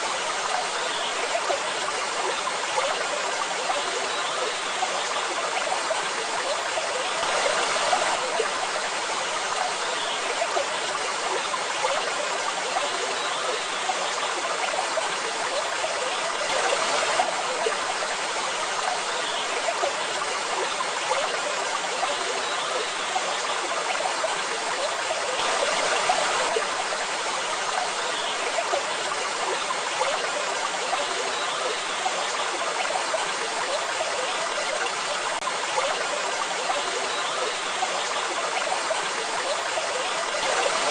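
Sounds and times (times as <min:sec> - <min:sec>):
waterfall rushing: 0:40.3 - 0:40.9.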